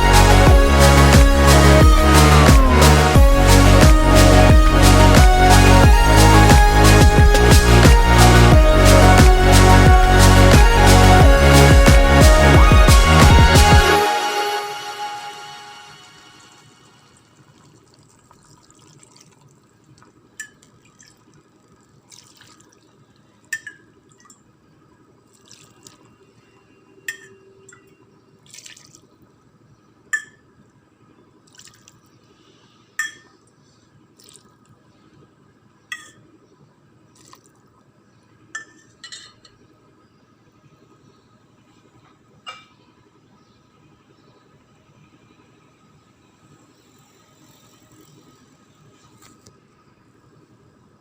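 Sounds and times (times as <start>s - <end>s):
faint background noise: 14.0s - 51.0s.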